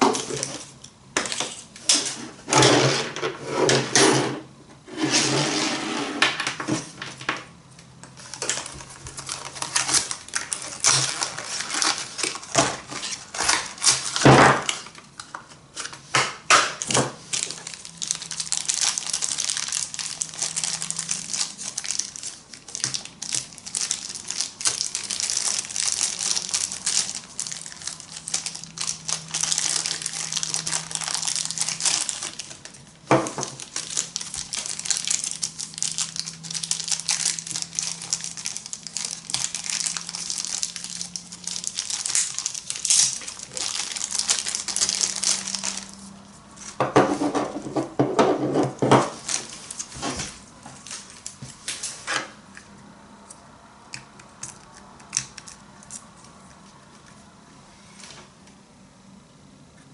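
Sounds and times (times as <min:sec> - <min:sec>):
packaging crinkling and rustling: 0:00.0 - 0:03.0, 0:08.0 - 0:52.2.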